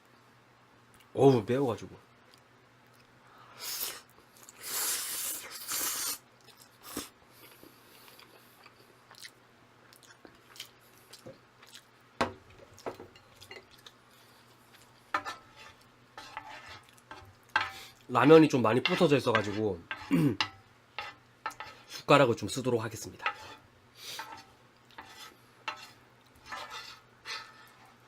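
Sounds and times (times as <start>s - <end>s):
chewing with clicks and smacks: 6.4s - 11.9s, 12.7s - 14.0s.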